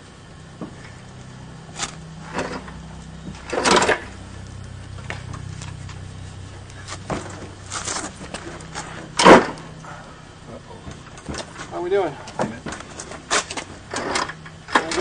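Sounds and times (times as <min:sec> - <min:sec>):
steady low hum: 0:00.0 - 0:15.0
metal scrape: 0:01.7 - 0:04.2
car body clunks: 0:06.9 - 0:09.8, 0:10.8 - 0:15.0.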